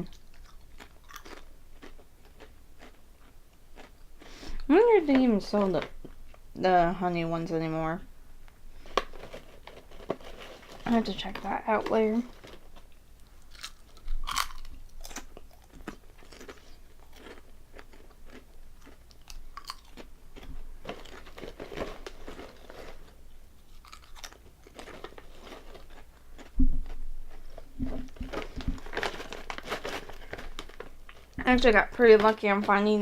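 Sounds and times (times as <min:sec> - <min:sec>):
chips crunched and chewed: 0:00.0 - 0:04.0, 0:12.3 - 0:31.4.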